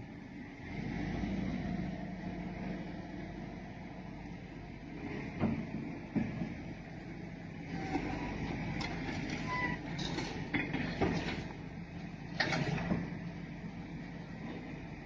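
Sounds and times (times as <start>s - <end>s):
heavy machinery engine running: 0.0s - 15.0s
sharp knocks and clanks: 5.3s - 6.7s, 8.7s - 11.6s.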